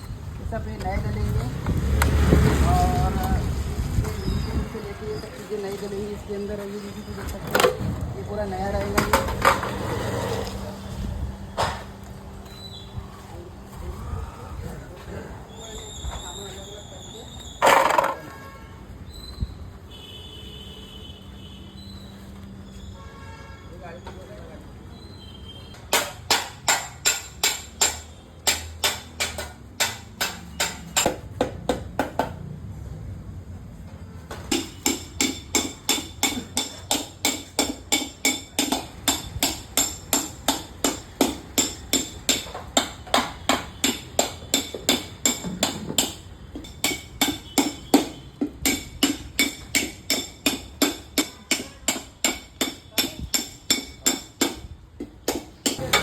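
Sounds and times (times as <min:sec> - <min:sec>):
hammer striking metal: 0:25.8 - 0:31.5, 0:34.5 - 0:56.0.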